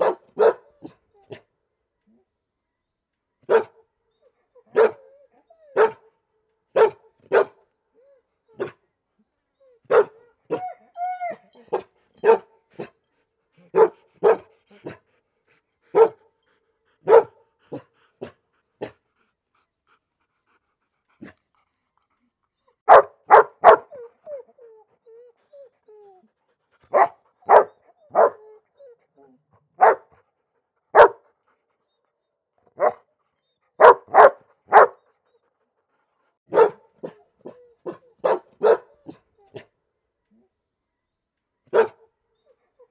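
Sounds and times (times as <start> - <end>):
dog barking: 0.0 - 0.9, 3.5 - 3.8, 4.7 - 5.0, 5.8 - 6.0, 6.7 - 7.6, 9.9 - 10.2, 11.7 - 12.9, 13.7 - 14.5, 15.9 - 16.2, 17.0 - 17.8, 22.9 - 24.0, 26.9 - 28.4, 29.8 - 30.1, 30.9 - 31.2, 32.8 - 33.0, 33.8 - 35.0, 36.5 - 37.2, 37.8 - 39.2, 41.7 - 42.0.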